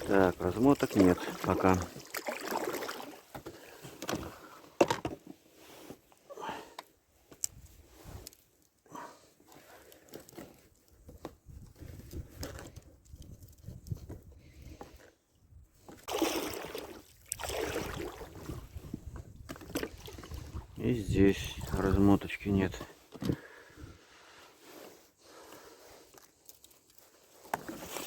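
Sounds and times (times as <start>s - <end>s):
water sloshing: 0.0s - 3.8s, 15.9s - 20.8s
oars pulling through water: 0.0s - 4.8s, 15.8s - 20.8s, 27.1s - 28.0s.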